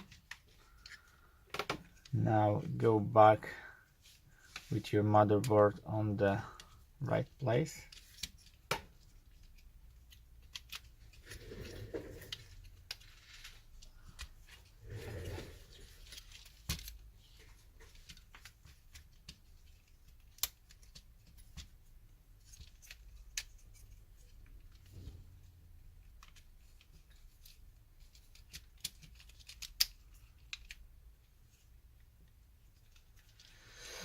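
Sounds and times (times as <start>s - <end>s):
plastic parts clicking: 7.8s - 11.3s, 26.1s - 30.9s.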